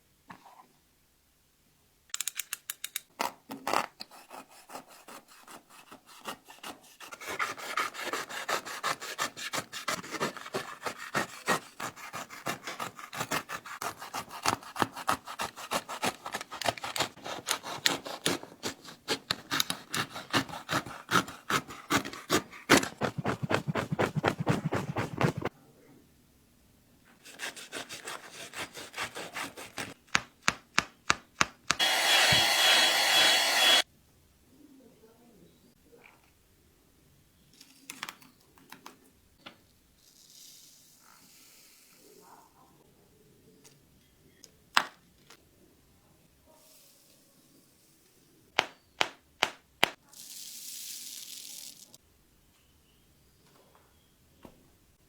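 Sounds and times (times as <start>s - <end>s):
saw cutting through a shoe: 4.1s - 25.5s, 27.2s - 30.0s, 31.7s - 33.8s.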